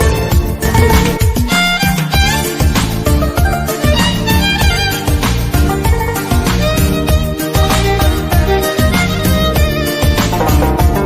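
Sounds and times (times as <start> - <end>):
bowed string melody: 0.0 - 11.0
steady quick beat: 0.3 - 1.9.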